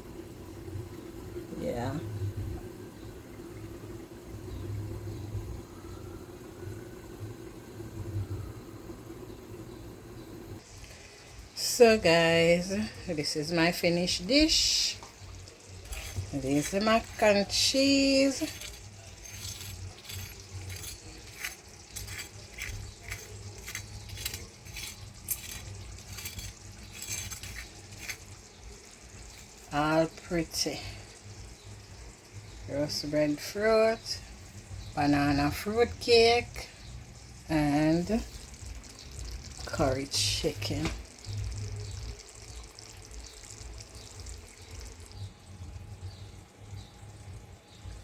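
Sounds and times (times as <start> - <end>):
low mechanical hum: 0.0 - 48.0
utensil clicks and scrapes: 15.7 - 28.5.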